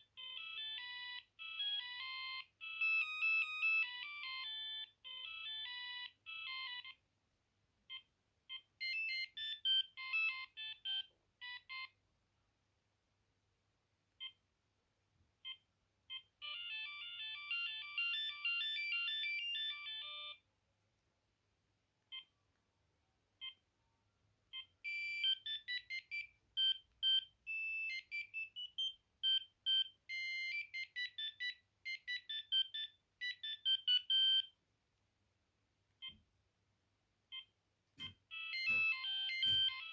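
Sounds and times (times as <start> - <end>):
mobile phone ringtones: 0.1 - 7.0, 7.9 - 11.9, 15.5 - 20.4, 24.5 - 34.6, 37.3 - 39.9.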